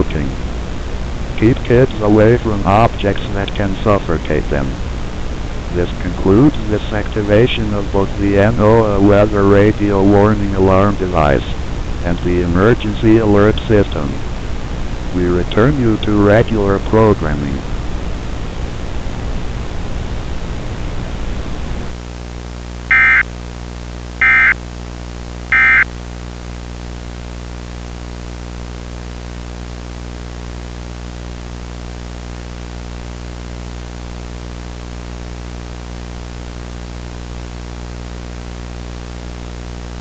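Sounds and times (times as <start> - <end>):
steady low hum: 0.0 - 40.0
shrill digital data bursts: 22.9 - 23.2, 24.2 - 24.6, 25.6 - 25.8.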